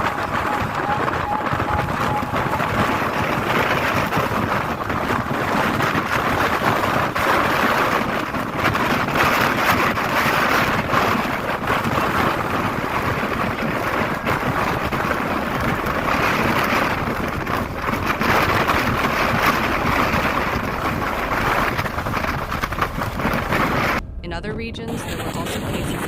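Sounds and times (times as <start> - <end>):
strong wind blowing on microphone: 0.0 - 26.0.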